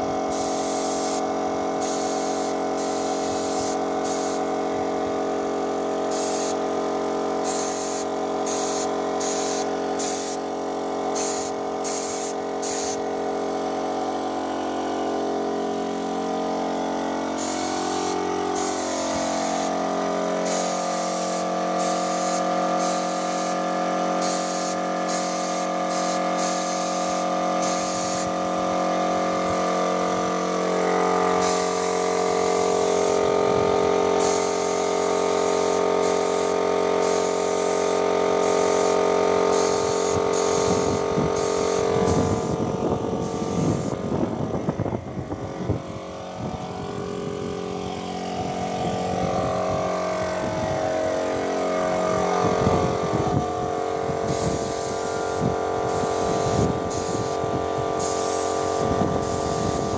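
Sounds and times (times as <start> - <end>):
machine motor running: 0.0 - 59.9
short bursts of hiss: 0.3 - 1.2, 1.8 - 4.4, 6.1 - 6.6, 7.4 - 10.4, 11.2 - 13.0, 17.4 - 19.8, 20.4 - 23.6, 24.2 - 28.3, 31.4 - 33.2, 34.2 - 42.6, 54.3 - 57.4, 58.0 - 59.9.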